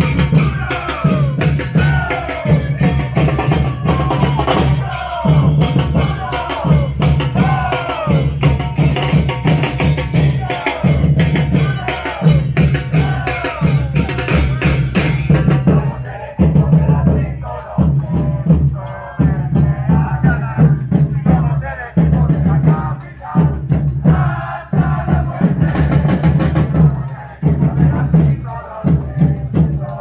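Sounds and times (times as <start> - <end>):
brass and drum band playing: 0.0 - 17.0.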